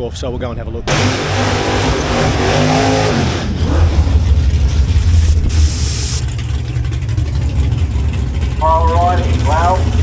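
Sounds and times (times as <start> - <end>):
car engine rumbling: 0.1 - 10.0.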